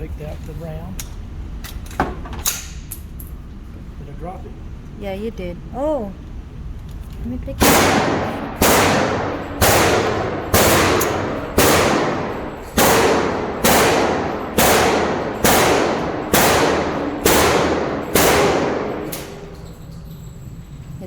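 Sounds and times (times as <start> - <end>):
echoing gunshots: 7.6 - 19.6.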